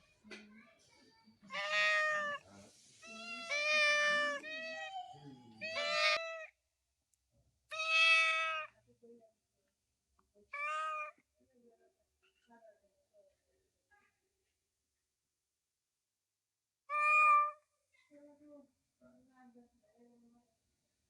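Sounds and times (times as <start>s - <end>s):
cat meowing: 1.5s - 2.4s, 3.0s - 6.5s, 7.7s - 8.7s, 10.5s - 11.2s, 16.9s - 17.6s.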